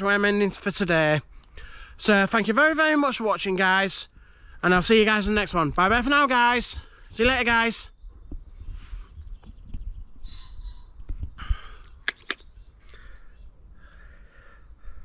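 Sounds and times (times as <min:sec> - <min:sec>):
small birds chirping: 0:00.0 - 0:15.0
wind rumble on microphone: 0:04.8 - 0:06.1, 0:06.8 - 0:13.9
sharp clicks: 0:12.0 - 0:13.0.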